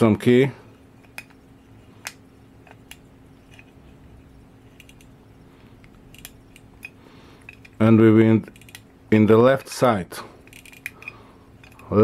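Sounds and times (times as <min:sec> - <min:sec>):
watch key winding clicks: 0:08.5 - 0:08.9, 0:10.5 - 0:11.9.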